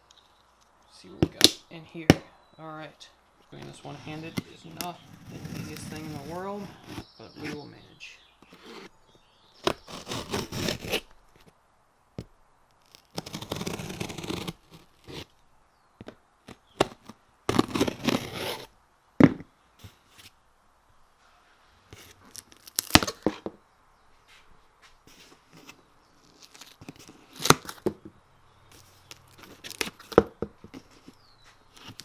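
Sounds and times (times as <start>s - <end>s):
sharp cracks: 0.0s - 2.4s, 22.0s - 23.6s, 25.5s - 28.1s
knife cutting cardboard: 3.5s - 7.7s, 8.4s - 9.0s, 9.6s - 11.5s, 12.8s - 15.4s, 16.5s - 18.7s, 21.2s - 23.5s, 25.1s - 28.0s, 28.7s - 32.0s
cardboard tearing and scraping: 3.6s - 7.6s, 8.4s - 8.9s, 9.6s - 11.5s, 12.8s - 15.3s, 16.5s - 18.7s, 21.9s - 23.5s, 25.1s - 28.0s, 28.7s - 32.0s.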